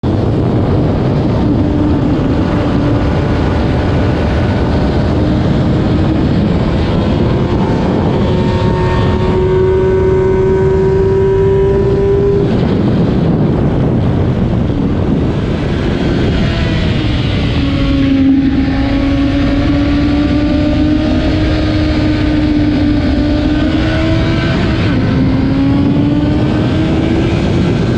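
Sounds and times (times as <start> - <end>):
motorcycle engine running hard: 0.0 - 27.9
wind noise on microphone: 0.0 - 27.9.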